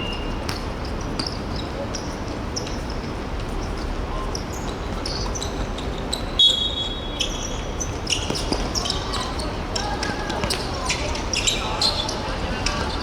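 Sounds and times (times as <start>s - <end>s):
sneaker squeaks on court floor: 0.0s - 13.0s
background voices: 8.7s - 13.0s.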